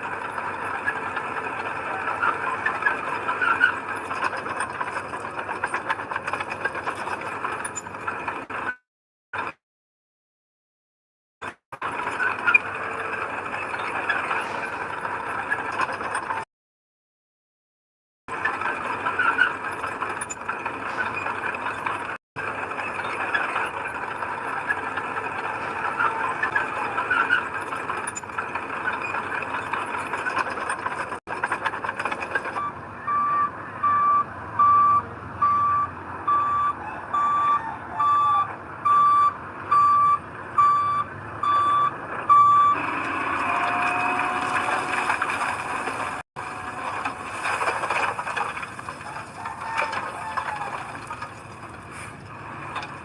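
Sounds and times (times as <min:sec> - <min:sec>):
heavy machinery engine running: 0:00.0 - 0:08.8, 0:11.4 - 0:16.5, 0:18.3 - 0:53.0
reversing alarm beeps: 0:32.6 - 0:44.4.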